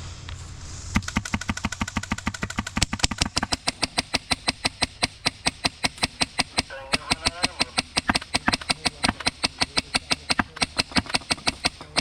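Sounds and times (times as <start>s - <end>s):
airsoft gun rapid fire: 1.0s - 12.0s.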